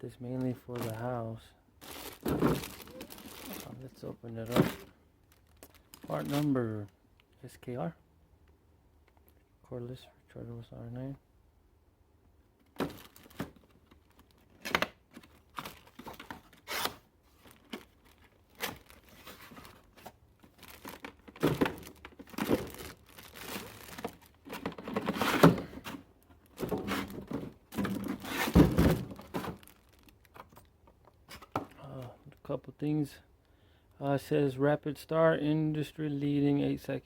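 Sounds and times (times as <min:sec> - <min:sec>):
packaging tearing and crinkling: 0:01.8 - 0:03.8, 0:12.8 - 0:25.8, 0:26.4 - 0:30.7.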